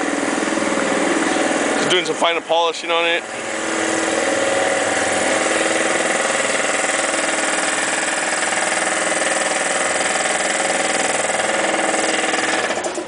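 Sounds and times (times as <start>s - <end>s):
electric polisher motor whine: 3.2s - 12.8s.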